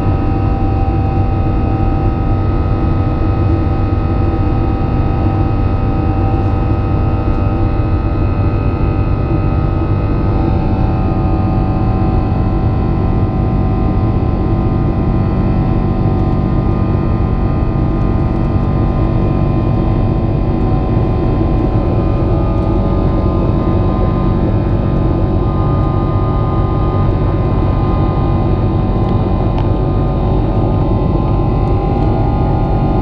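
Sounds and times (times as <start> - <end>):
airliner engines rumbling and whining: 0.0 - 33.0.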